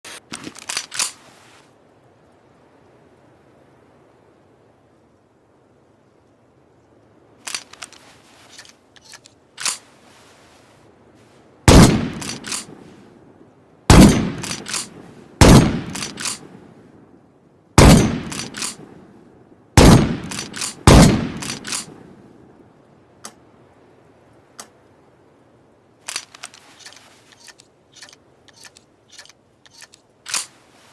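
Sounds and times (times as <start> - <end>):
quick clicks: 0.2 - 1.2, 7.4 - 9.8, 12.1 - 12.7, 14.4 - 14.9, 15.9 - 16.4, 18.2 - 18.8, 20.2 - 21.9, 26.0 - 30.6
shotgun bangs: 11.7 - 12.7, 13.9 - 16.4, 17.8 - 18.8, 19.8 - 21.9.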